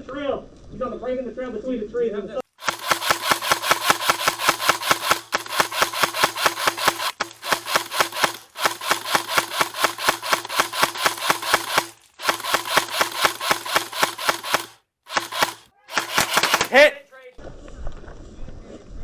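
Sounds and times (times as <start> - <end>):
airsoft gun firing bursts: 2.5 - 17.0.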